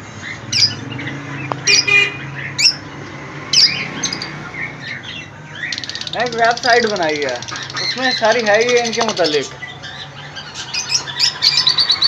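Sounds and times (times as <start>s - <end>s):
shrill bird squawks: 1.6s - 2.9s, 9.6s - 12.0s.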